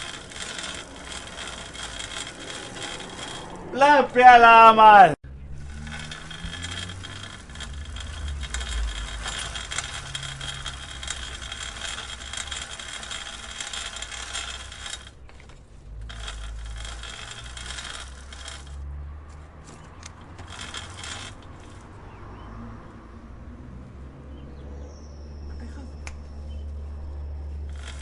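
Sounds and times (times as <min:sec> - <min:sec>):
bicycle chain clicking: 0:00.0 - 0:04.2, 0:05.4 - 0:22.1, 0:27.5 - 0:28.0.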